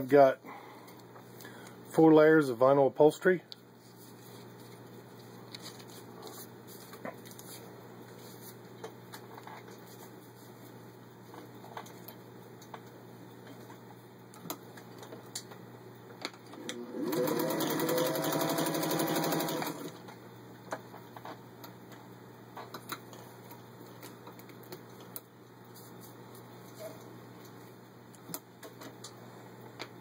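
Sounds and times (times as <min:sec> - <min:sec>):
sewing machine running: 0:16.6 - 0:20.0.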